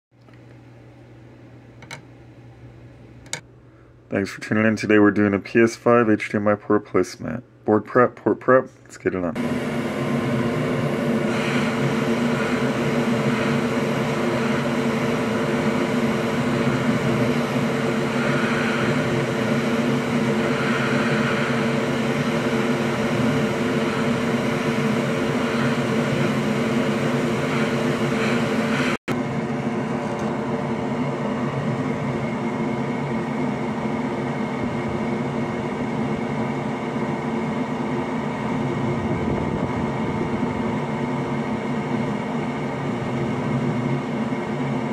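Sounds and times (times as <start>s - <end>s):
electric fan motor whirring: 9.0s - 44.9s.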